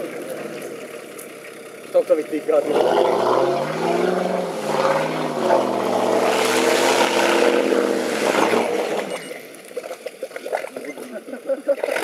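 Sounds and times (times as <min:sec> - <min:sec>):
off-road vehicle engine revving: 0:00.0 - 0:09.5.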